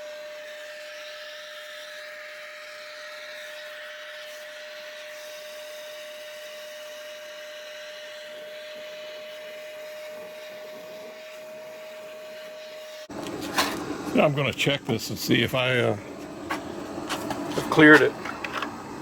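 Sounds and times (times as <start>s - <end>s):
shop vacuum whining: 0.0s - 19.0s.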